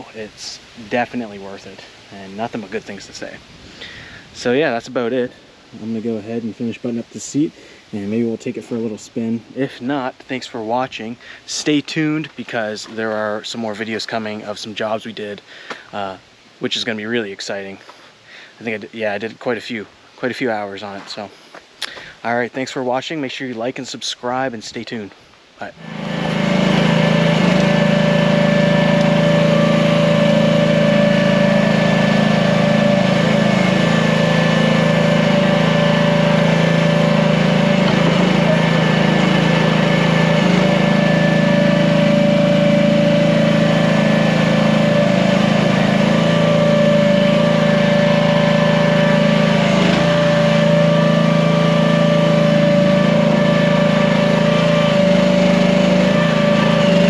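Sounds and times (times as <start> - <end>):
high whine: 25.6 - 57.0
small gasoline engine running: 25.7 - 57.0.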